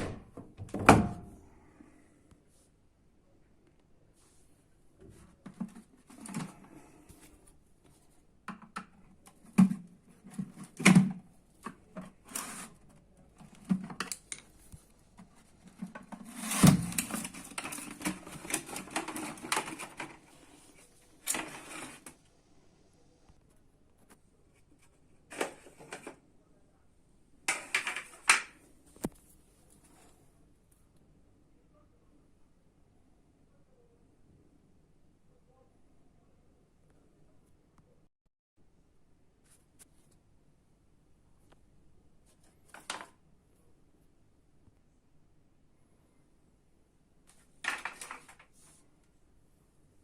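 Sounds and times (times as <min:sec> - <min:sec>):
scraping and rattling: 0:15.3 - 0:22.1.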